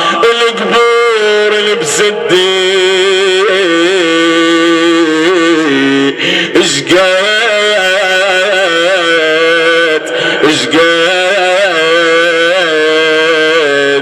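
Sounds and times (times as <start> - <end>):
man chanting a lament: 0.0 - 14.0.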